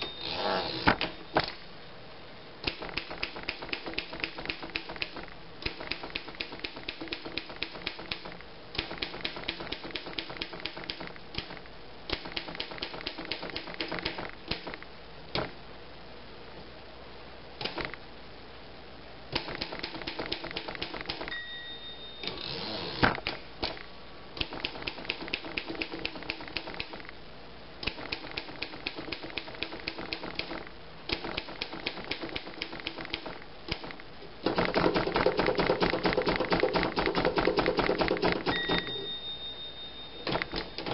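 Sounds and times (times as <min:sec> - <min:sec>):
typewriter bell ring: 0:21.3 - 0:22.2, 0:38.5 - 0:40.9.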